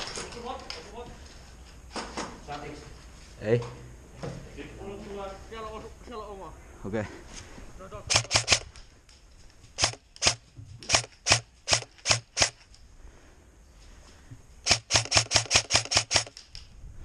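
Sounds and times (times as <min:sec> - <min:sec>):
airsoft gun shots: 0:08.1 - 0:08.7, 0:09.8 - 0:12.6, 0:14.6 - 0:16.4.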